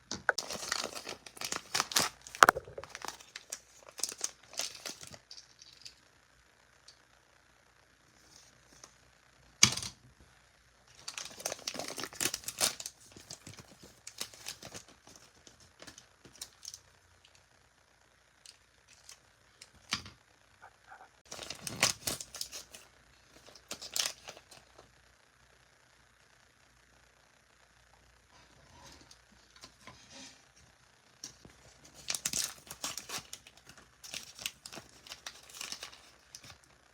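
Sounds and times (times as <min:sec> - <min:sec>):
plastic packaging tearing and crinkling: 0:00.3 - 0:05.9, 0:10.9 - 0:16.8, 0:21.3 - 0:24.7, 0:31.8 - 0:36.6.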